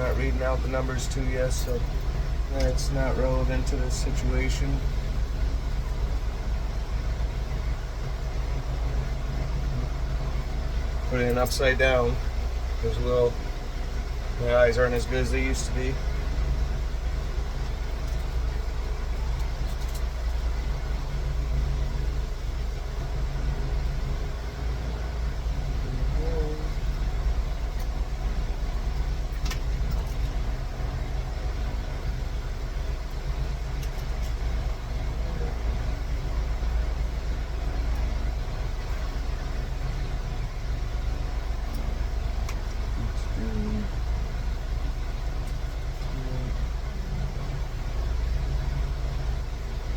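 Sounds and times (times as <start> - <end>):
vehicle engine idling: 0.0 - 49.9.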